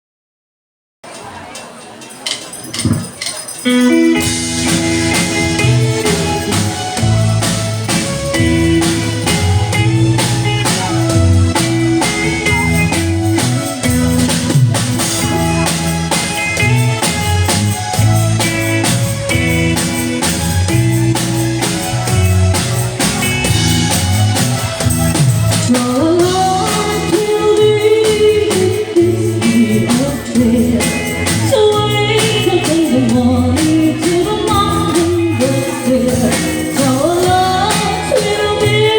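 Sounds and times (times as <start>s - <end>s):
drums: 1.0s - 38.9s
bass guitar: 2.7s - 38.9s
guitar playing a waltz: 3.6s - 38.9s
person singing: 3.7s - 14.0s, 25.5s - 38.9s.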